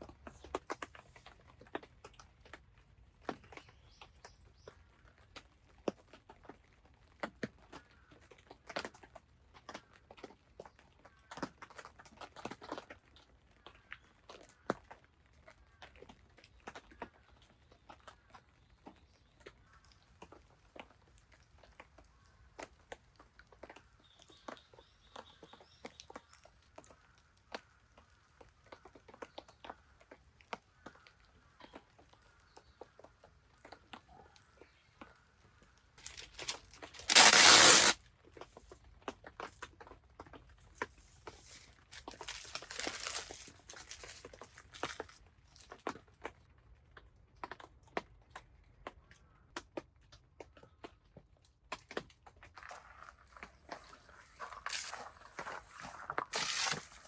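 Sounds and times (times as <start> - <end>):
campfire crackling: 40.8 - 45.2.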